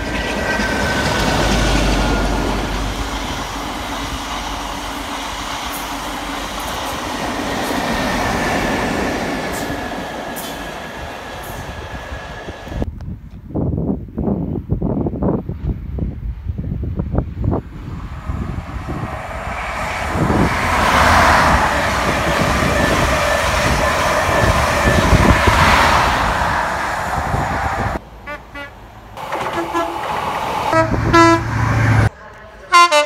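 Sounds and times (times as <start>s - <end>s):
train rushing past: 0.0s - 12.9s, 16.9s - 33.0s
train horn blasts: 28.2s - 33.0s.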